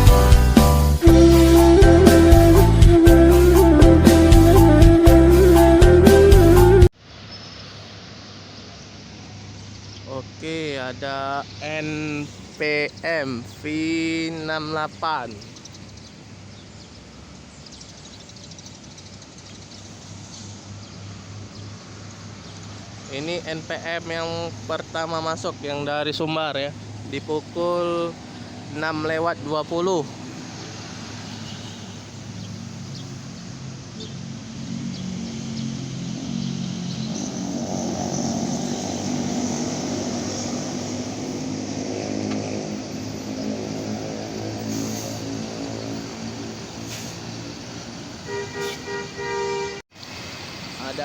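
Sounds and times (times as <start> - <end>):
bus engine humming: 0.0 - 7.0, 26.7 - 49.8.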